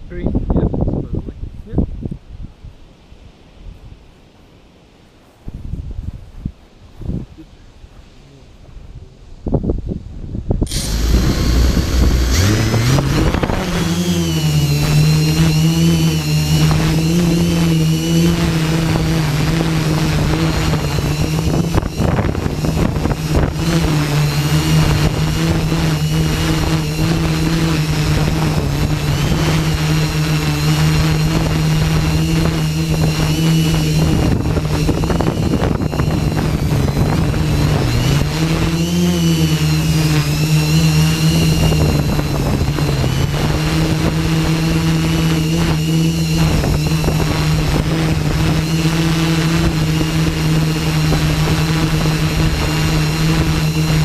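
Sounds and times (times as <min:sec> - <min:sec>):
wind rumbling: 0:08.8 - 0:54.0
drone propellers droning: 0:10.6 - 0:54.0.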